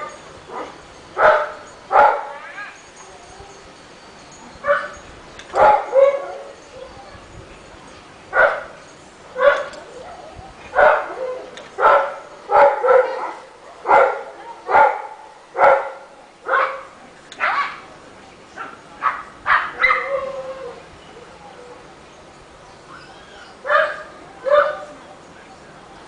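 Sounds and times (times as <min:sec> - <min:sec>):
dog barking: 0:00.5 - 0:02.4, 0:05.6 - 0:06.5, 0:08.4 - 0:08.7, 0:09.4 - 0:09.8, 0:10.7 - 0:17.8, 0:18.6 - 0:20.1, 0:23.7 - 0:24.9.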